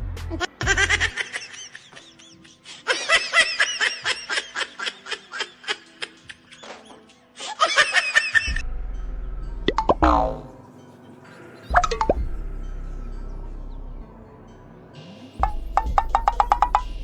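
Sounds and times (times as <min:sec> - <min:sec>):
background music: 0:00.0 - 0:17.0
person laughing: 0:00.3 - 0:08.6.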